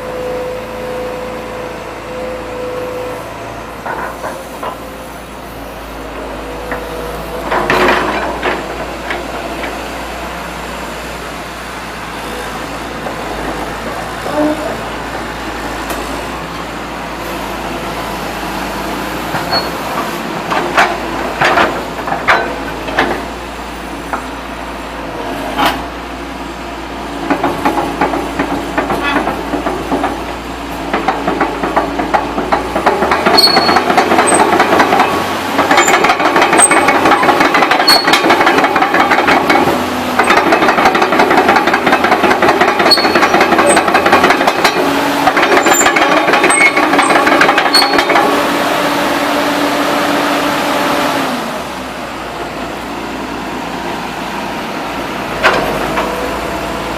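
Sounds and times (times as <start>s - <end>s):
excavator diesel engine running: 0.0s - 56.9s
metal clanks: 7.4s - 9.8s, 30.9s - 48.3s.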